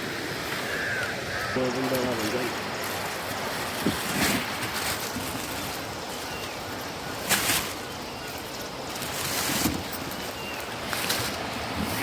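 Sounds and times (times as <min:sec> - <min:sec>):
rushing river water: 0:00.0 - 0:12.0.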